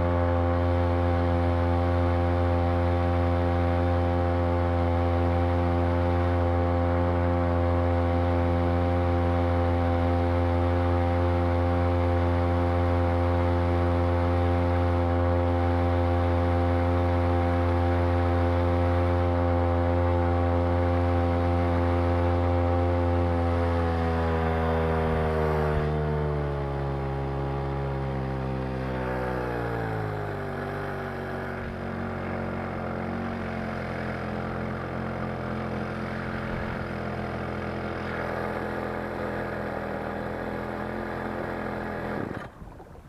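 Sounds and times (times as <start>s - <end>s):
outboard motor running at high speed: 0.0s - 43.0s.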